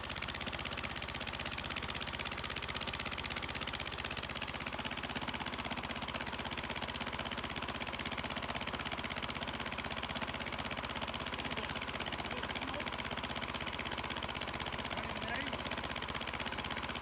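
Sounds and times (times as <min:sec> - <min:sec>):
small engine running steadily: 0:00.0 - 0:17.0.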